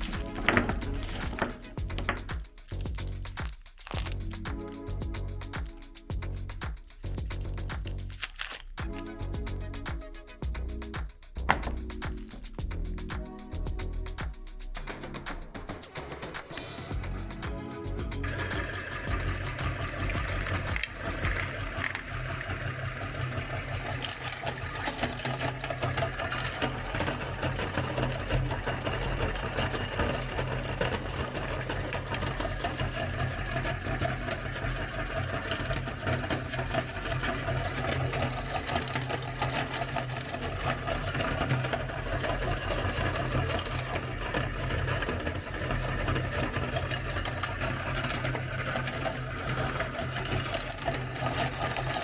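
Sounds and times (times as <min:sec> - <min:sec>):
hard candy crackling: 0:00.0 - 0:13.3, 0:16.0 - 0:52.0
electric meat grinder humming: 0:18.2 - 0:52.0.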